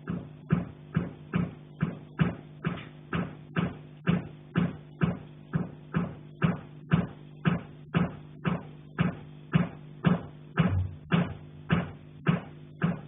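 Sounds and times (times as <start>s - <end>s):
knocking on a pipe: 0.0s - 13.0s
low hum: 10.5s - 12.2s.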